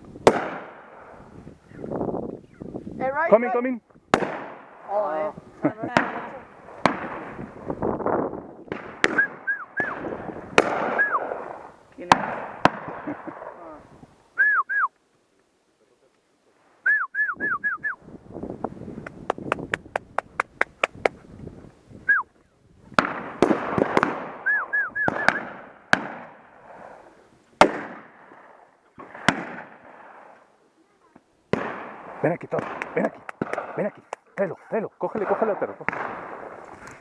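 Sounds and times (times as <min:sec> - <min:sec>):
shotgun shots: 0:00.2 - 0:01.2, 0:04.1 - 0:04.9, 0:05.8 - 0:07.6, 0:08.7 - 0:13.6, 0:23.0 - 0:27.0, 0:27.6 - 0:30.4, 0:31.5 - 0:34.0, 0:35.1 - 0:36.7
short falling whistle notes: 0:09.1 - 0:10.0, 0:11.0 - 0:11.2, 0:14.4 - 0:15.0, 0:16.8 - 0:18.0, 0:24.4 - 0:25.5
quick run of clicks: 0:19.0 - 0:21.2.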